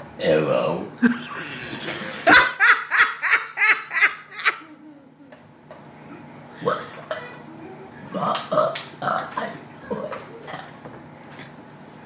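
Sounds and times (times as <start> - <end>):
person laughing: 1.0 - 5.1.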